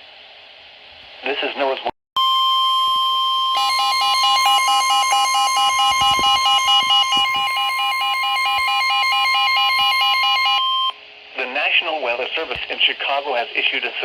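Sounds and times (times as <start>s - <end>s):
fast alternating beep: 2.2s - 11.0s
high alarm tone: 2.2s - 11.0s.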